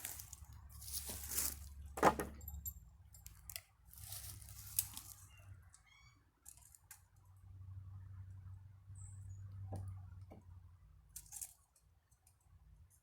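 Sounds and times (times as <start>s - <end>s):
wood pieces scraping: 0.0s - 2.4s.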